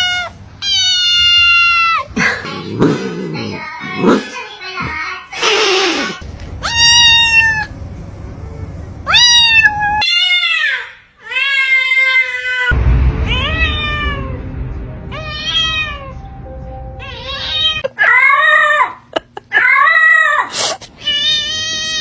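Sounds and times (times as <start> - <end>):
kitten meowing: 6.6 - 7.7, 9.1 - 10.6.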